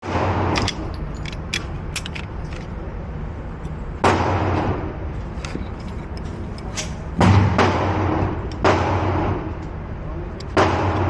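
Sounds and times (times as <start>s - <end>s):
pistol shots with echo: 10.5s - 11.0s.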